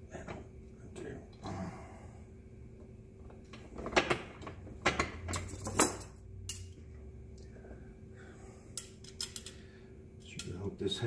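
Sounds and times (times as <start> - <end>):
low steady hum: 0.0 - 11.0
steel parts clinking and knocking: 3.5 - 6.8, 8.8 - 9.6.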